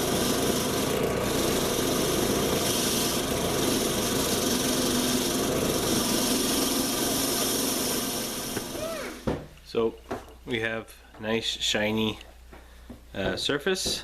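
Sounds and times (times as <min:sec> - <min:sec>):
power tool grinding steel: 0:00.0 - 0:09.3.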